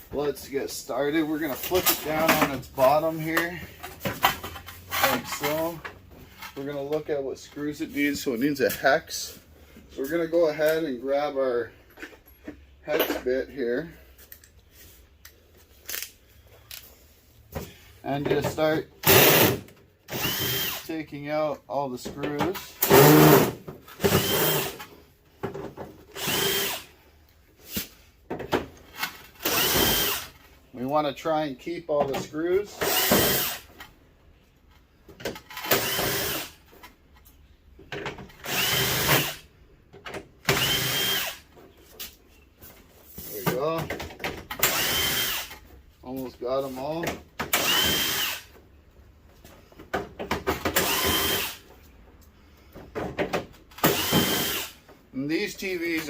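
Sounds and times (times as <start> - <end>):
cordless drill motor whine: 20.1 - 20.8, 26.2 - 26.8, 29.5 - 30.3, 38.5 - 39.3, 40.6 - 41.4, 44.6 - 45.5, 47.6 - 48.5, 50.8 - 51.6, 53.8 - 54.8.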